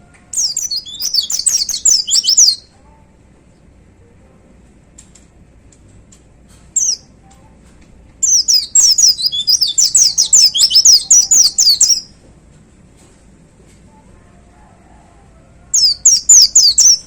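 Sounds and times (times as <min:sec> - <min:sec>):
bird chirp: 0:00.3 - 0:02.7, 0:06.8 - 0:07.2, 0:08.2 - 0:12.1, 0:15.7 - 0:17.0
bird twittering burst: 0:00.4 - 0:02.6, 0:08.2 - 0:12.0.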